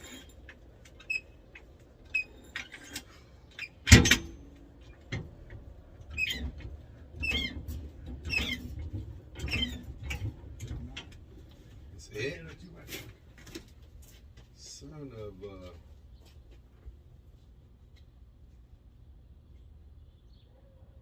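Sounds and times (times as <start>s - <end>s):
exhaust pipe squeaking and scraping: 0.0s - 13.2s
loud metal clank: 3.9s - 4.5s.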